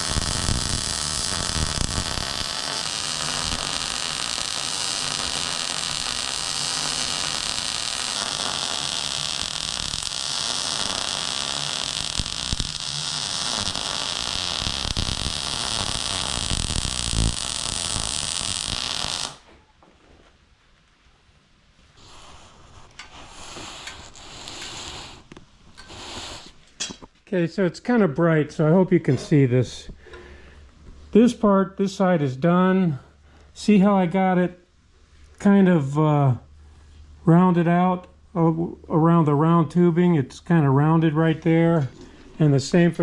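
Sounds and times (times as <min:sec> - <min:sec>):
welding arc crackling and hissing: 0:00.0 - 0:19.5, 0:22.0 - 0:26.8.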